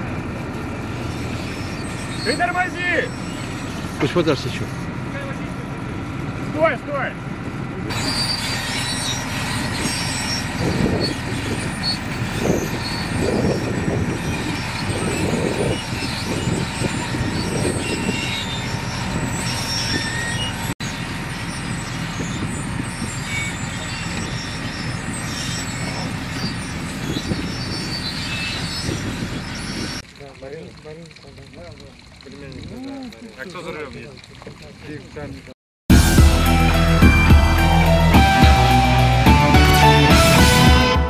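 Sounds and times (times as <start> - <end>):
short high-pitched squeaks: 0.0 - 5.6, 7.9 - 35.0
tractor engine running: 0.0 - 41.0.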